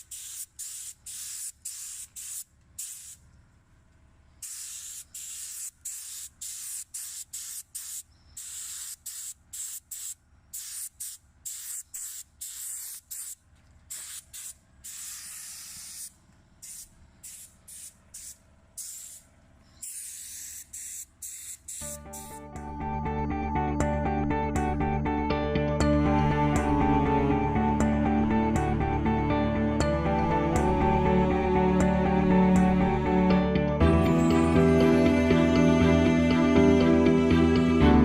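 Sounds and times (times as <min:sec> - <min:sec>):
spray gun hissing: 0:00.0 - 0:03.3, 0:04.3 - 0:22.5.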